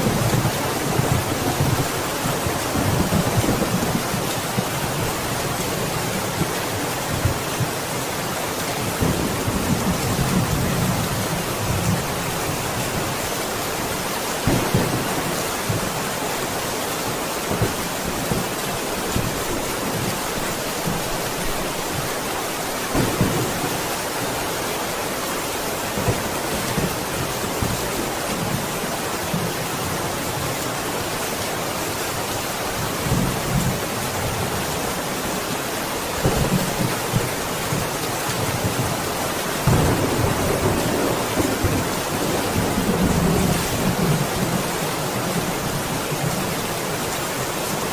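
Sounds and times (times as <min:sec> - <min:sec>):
heavy rain: 0:00.0 - 0:47.9
thunder rumbling: 0:22.9 - 0:23.9, 0:39.6 - 0:44.6.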